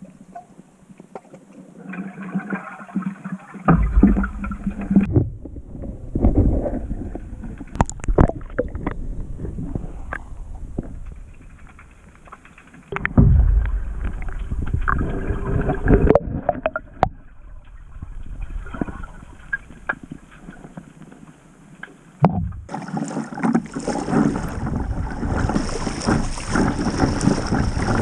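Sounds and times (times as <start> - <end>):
water splashing around kayak: 0.0 - 28.0
water rushing: 11.6 - 20.7, 22.6 - 28.0
heavy low rumble: 12.9 - 19.4
wind buffeting microphone: 23.9 - 28.0.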